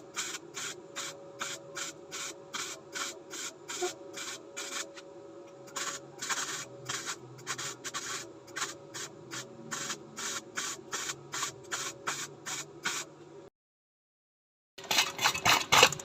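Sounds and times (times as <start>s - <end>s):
welding arc crackling and hissing: 5.7s - 12.7s.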